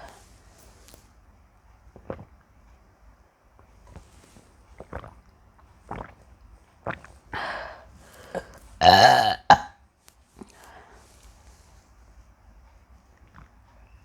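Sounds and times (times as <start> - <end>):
woman gulping milk: 1.9 - 2.6, 3.6 - 9.7, 13.2 - 13.7
loud low belch: 8.8 - 9.8.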